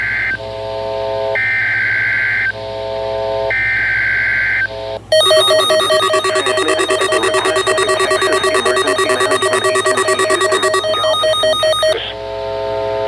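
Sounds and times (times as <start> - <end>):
harsh digital data bursts: 5.2 - 12.0
pulsing electronic alert tone: 5.2 - 12.0.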